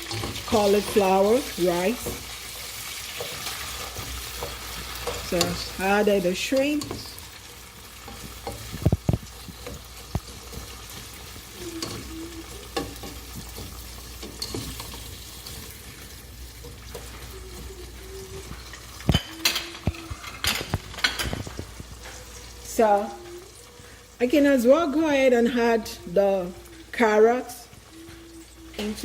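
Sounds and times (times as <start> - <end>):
utensil scraping a pan: 0.0 - 22.5
shrimps sizzling in a pan: 0.0 - 29.0.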